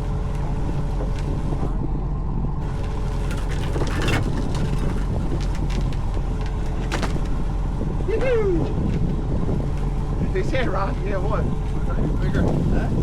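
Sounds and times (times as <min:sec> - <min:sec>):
boat engine running: 0:00.0 - 0:13.0
knocks and clatter: 0:02.6 - 0:07.5.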